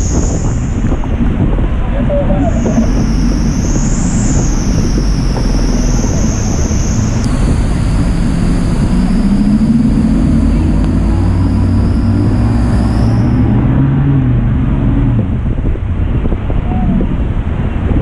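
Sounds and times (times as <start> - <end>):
boat engine rumble: 0.0 - 18.0
wind: 0.0 - 18.0.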